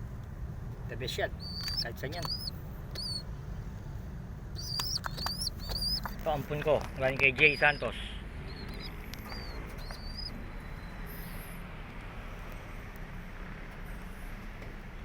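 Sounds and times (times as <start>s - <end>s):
low background hum: 0.0s - 15.0s
pigeons chirping: 1.0s - 3.3s, 4.5s - 11.4s.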